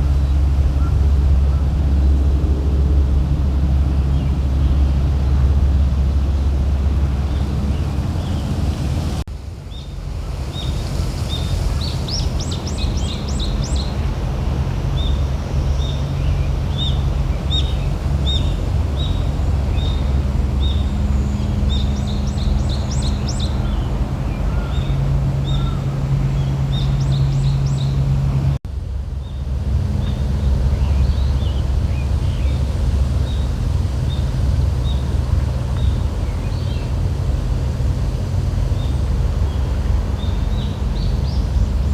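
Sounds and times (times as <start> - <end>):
wind on microphone: 0.0 - 9.3
steady low hum: 0.0 - 41.9.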